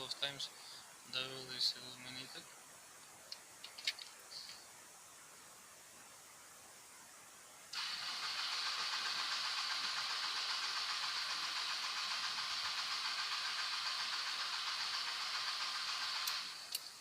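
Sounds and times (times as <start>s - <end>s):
engine cranking on starter motor: 7.8s - 17.0s.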